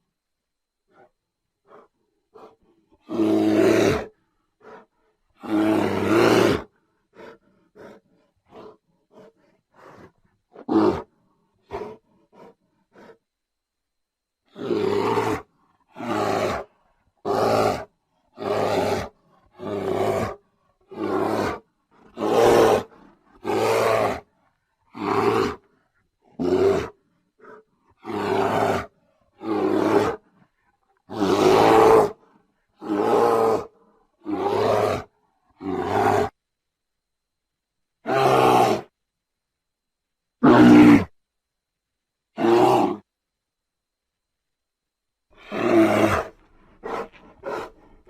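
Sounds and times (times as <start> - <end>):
bear roaring: 0.9 - 13.2, 14.5 - 36.4, 38.0 - 38.9, 40.4 - 41.2, 42.4 - 43.1, 45.4 - 48.0
bear grunts and huffs: 0.9 - 13.4, 14.5 - 36.4, 45.3 - 48.0.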